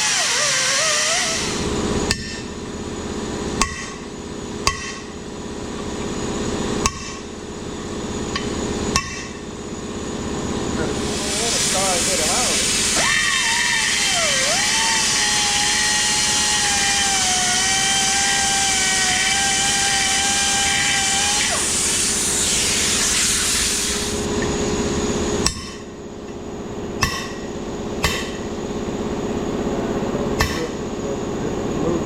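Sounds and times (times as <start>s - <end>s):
power tool running on metal: 0.0s - 26.0s
hammer blows on metal: 27.0s - 28.4s.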